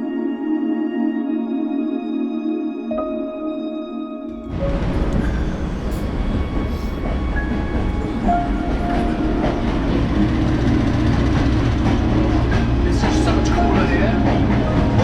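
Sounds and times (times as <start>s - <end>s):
train carriage rumbling on rails: 4.3s - 15.0s.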